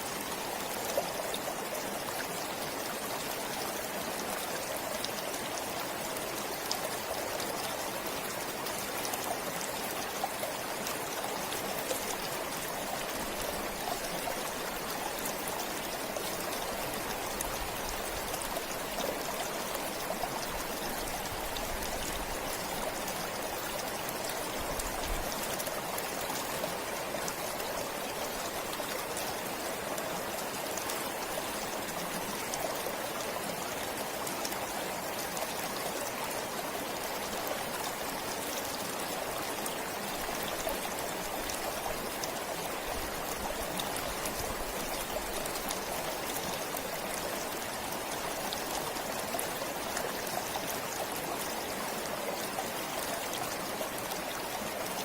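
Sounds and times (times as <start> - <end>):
stream flowing: 0.0 - 55.0.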